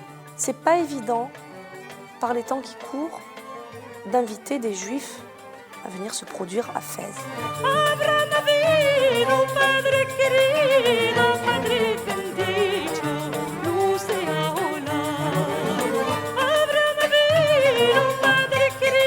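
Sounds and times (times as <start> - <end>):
plucked instrumental accompaniment: 0.0 - 19.0
solo voice singing: 7.6 - 19.0.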